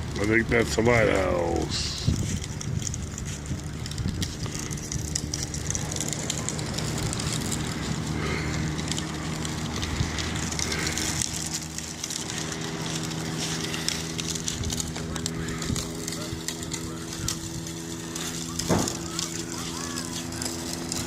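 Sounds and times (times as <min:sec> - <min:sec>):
low hum: 0:00.0 - 0:21.0
wind on microphone: 0:01.6 - 0:07.6.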